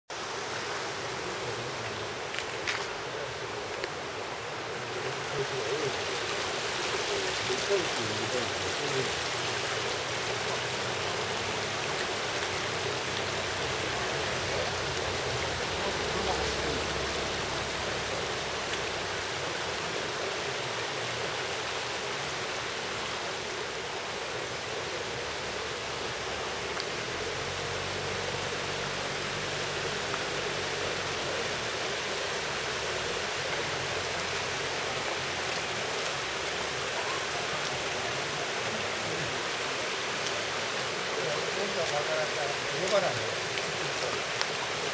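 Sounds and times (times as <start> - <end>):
river rushing over rocks: 0.1 - 44.9.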